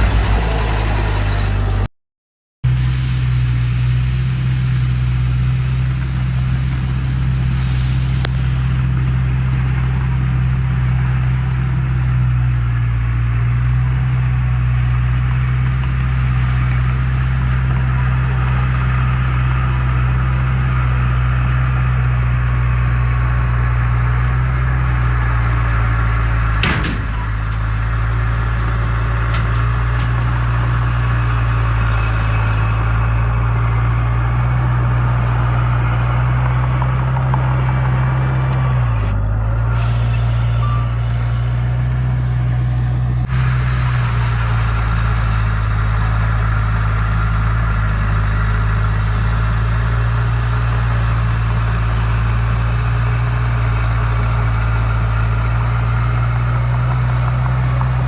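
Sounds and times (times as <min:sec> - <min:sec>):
heavy diesel engine running: 0:00.0 - 0:01.9, 0:02.6 - 0:58.0
sharp knock: 0:26.6 - 0:30.2.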